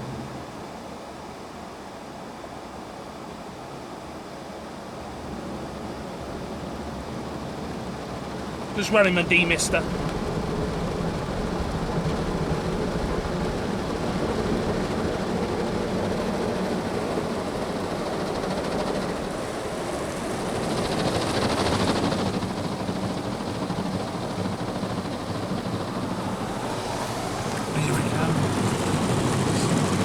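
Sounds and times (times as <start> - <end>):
car fan blowing: 8.3 - 30.0
rush of noise: 26.0 - 30.0
car wash brushes running: 26.2 - 30.0.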